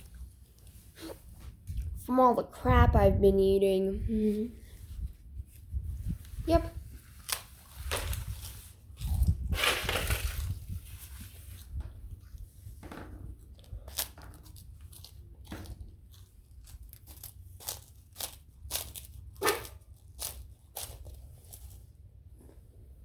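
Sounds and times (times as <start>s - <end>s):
handling rustles and clicks: 13.2s - 22.6s.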